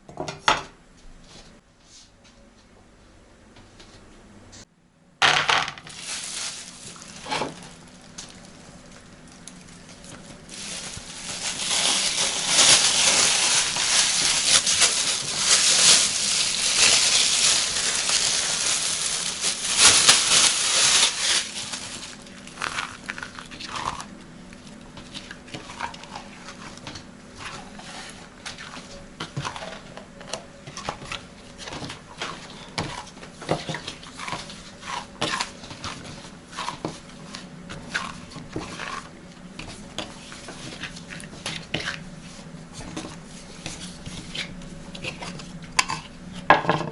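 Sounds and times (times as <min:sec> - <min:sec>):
crinkling and rustling: 0:05.6 - 0:42.0.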